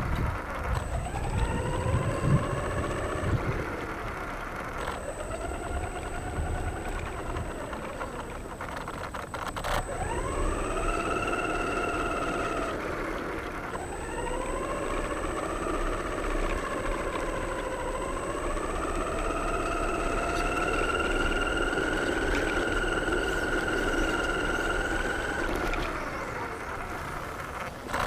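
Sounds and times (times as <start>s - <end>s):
model car motor whining: 0.0s - 28.0s.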